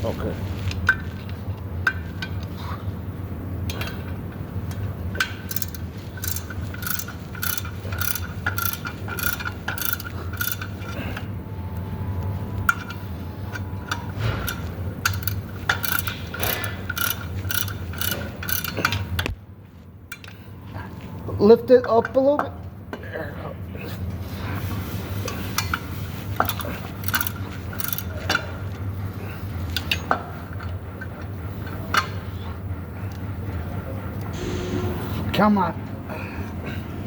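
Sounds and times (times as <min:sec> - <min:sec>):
ratchet wrench clicking: 0:05.2 - 0:11.0, 0:13.9 - 0:19.2, 0:26.4 - 0:28.5
low hum: 0:10.1 - 0:17.6, 0:32.3 - 0:37.0.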